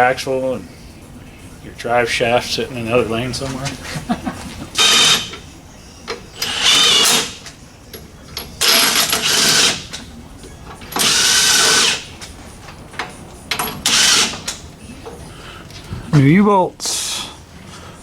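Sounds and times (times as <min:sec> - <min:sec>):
power tool whining and rattling: 0:04.7 - 0:05.4, 0:06.1 - 0:07.6, 0:08.4 - 0:10.1, 0:10.7 - 0:14.6.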